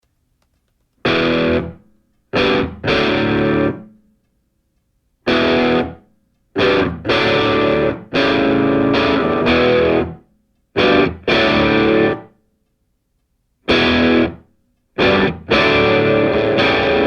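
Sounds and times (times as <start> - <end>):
distorted electric guitar chords: 1.0 - 1.8, 2.4 - 4.0, 5.3 - 6.0, 6.6 - 10.2, 10.8 - 12.3, 13.7 - 17.0.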